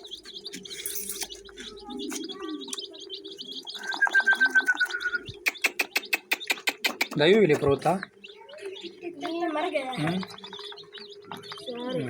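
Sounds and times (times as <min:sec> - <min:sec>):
chicks peeping: 0:00.0 - 0:12.0
low murmur of birds: 0:00.0 - 0:12.0.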